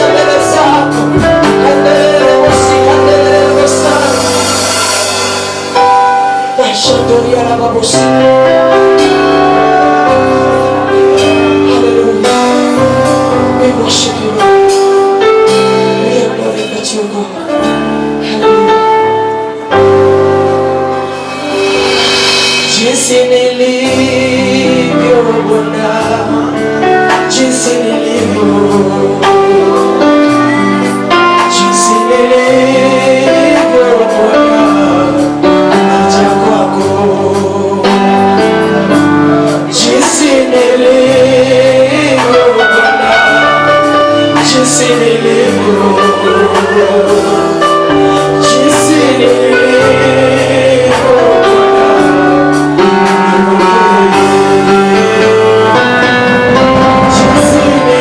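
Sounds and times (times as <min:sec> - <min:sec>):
keyboard and bass chords: 0:00.0 - 0:58.0
person singing with vibrato: 0:00.0 - 0:58.0.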